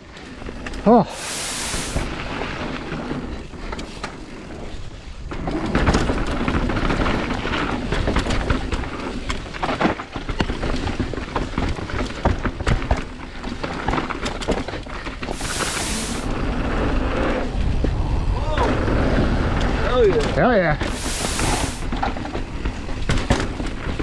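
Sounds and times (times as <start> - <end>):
bike rattling over bumps: 0.0 - 24.0
wind and tyres rumbling over dirt: 0.0 - 24.0.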